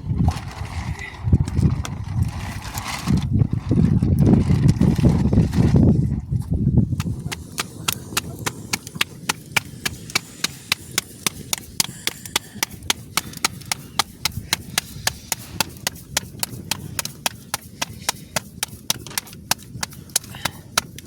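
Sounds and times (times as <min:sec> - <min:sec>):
rapid sharp taps: 0:07.0 - 0:21.0.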